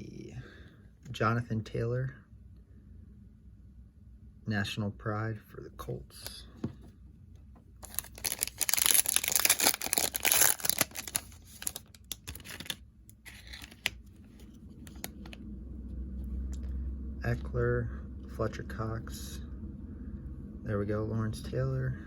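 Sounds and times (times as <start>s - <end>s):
wrapper tearing and crinkling: 7.8s - 14.1s
cards clicking and rustling: 7.8s - 15.4s.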